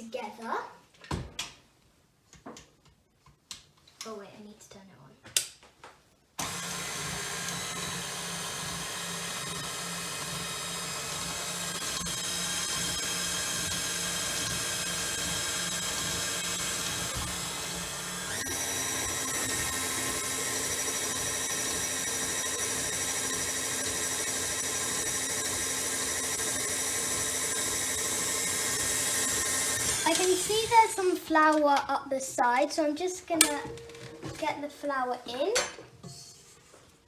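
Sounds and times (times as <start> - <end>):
electric mixer whining: 6.4 - 31.1.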